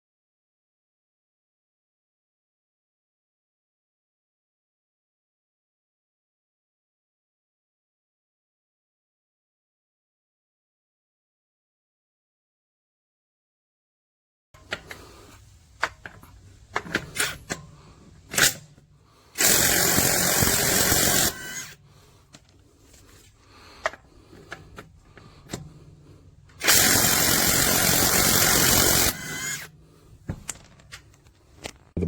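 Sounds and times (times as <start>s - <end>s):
impact wrench running: 19.4s - 21.8s, 26.6s - 29.9s.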